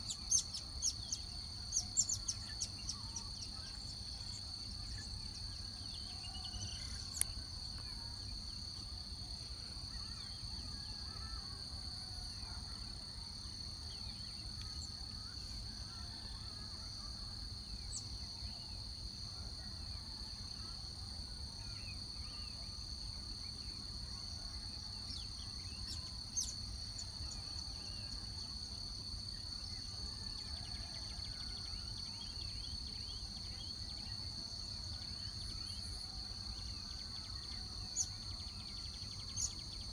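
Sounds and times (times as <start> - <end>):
faint bird chirps: 0.0 - 8.9, 29.3 - 39.9
high-pitched insect trill: 0.0 - 12.6, 21.5 - 39.9.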